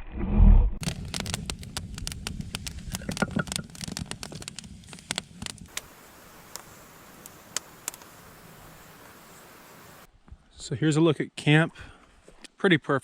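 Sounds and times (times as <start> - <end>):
dense crackling and clicking: 0.8 - 9.3
faint steady hiss: 4.6 - 10.1.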